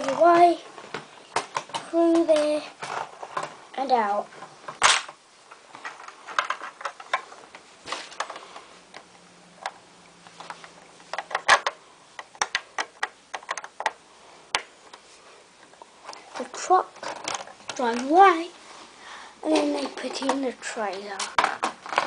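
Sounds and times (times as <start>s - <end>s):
plastic toy pieces clicking: 11.2s - 14.0s.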